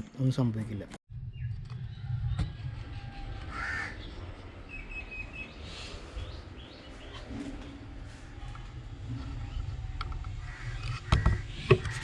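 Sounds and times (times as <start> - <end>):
steady low rumble: 1.1 - 11.6
crow cawing: 3.5 - 4.1, 10.4 - 12.0.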